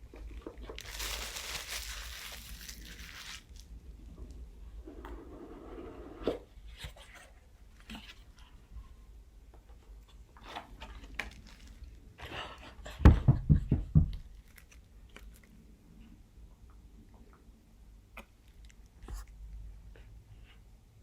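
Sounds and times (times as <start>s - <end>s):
paper and card rustling: 0.8s - 3.6s
dull heavy knocks: 13.0s - 14.2s.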